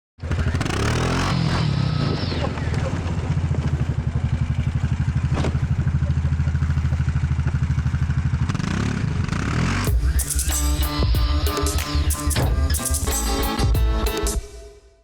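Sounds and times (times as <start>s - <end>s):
atv engine revving: 0.2s - 14.4s
music: 9.8s - 15.0s.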